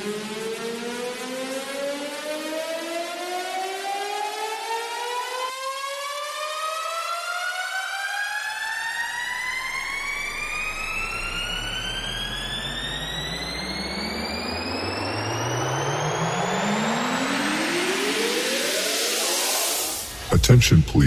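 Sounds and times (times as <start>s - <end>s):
electronic tone sweeping upward: 9.2s - 20.1s
deep rising bass tone: 10.0s - 14.8s.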